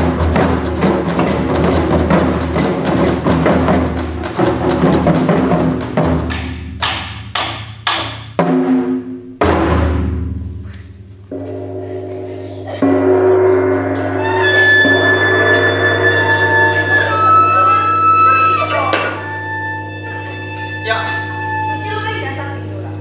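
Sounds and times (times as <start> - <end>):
taiko drumming: 0.0 - 23.0
sustained low tone: 11.3 - 22.9.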